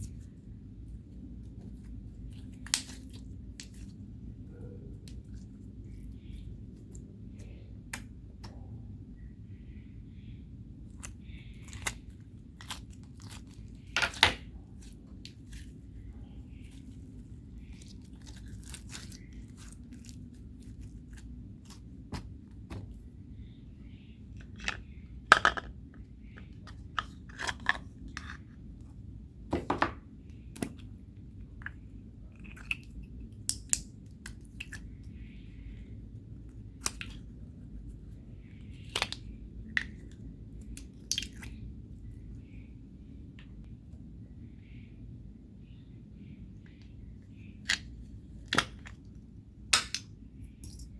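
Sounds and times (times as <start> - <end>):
faint low hum: 0.0 - 50.9.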